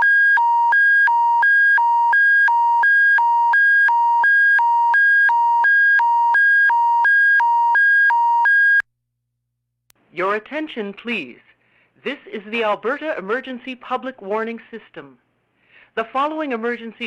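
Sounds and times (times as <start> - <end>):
two-tone electronic alert signal: 0.0 - 8.8.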